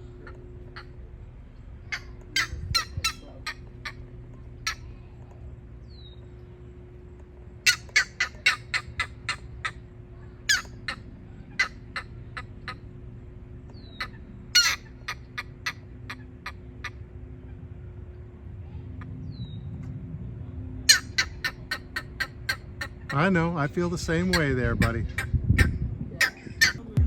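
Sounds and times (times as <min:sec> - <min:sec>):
bird calling: 0:00.0 - 0:05.1, 0:07.6 - 0:17.7, 0:20.9 - 0:27.0.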